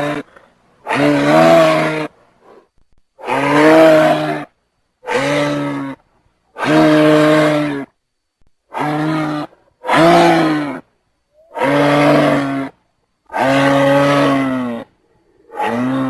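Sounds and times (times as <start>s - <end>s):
giraffe bellowing: 0.0s - 2.1s, 8.7s - 10.8s, 11.4s - 16.0s.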